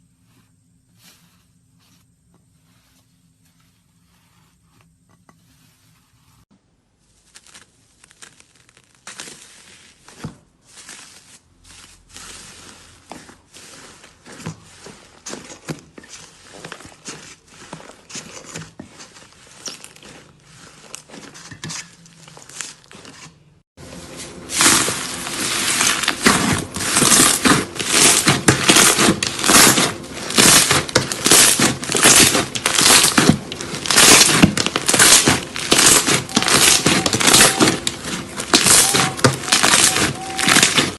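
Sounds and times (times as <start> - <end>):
slime squeezed by hand crackling: 7.1 - 10.1, 24.6 - 40.9.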